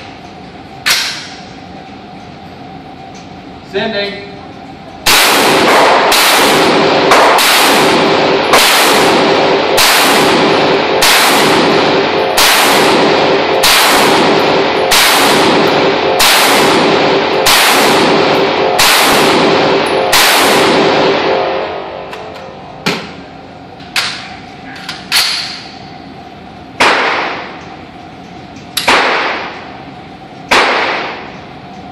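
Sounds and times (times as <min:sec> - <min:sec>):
echoing gunshots: 0:05.0 - 0:22.1, 0:26.8 - 0:27.6, 0:28.8 - 0:29.7, 0:30.5 - 0:31.4.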